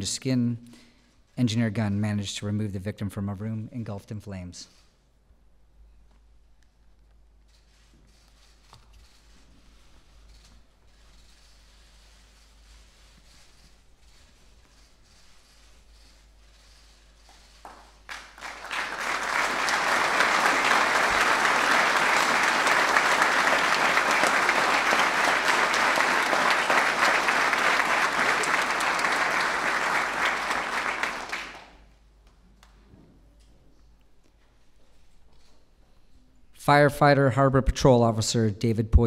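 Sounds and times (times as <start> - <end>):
audience applauding: 17.6 - 31.9.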